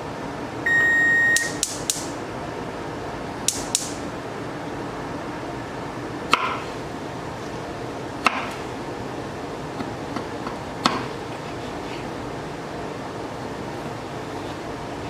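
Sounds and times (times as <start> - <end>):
knife chopping on cutting board: 6.3 - 6.7.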